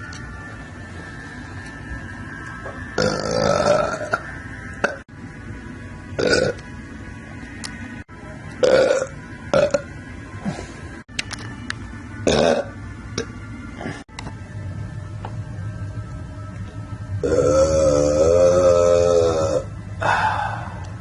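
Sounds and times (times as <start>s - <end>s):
person belching loudly: 3.0s - 5.0s, 6.2s - 6.6s, 8.6s - 9.9s, 12.2s - 13.3s, 17.2s - 19.7s.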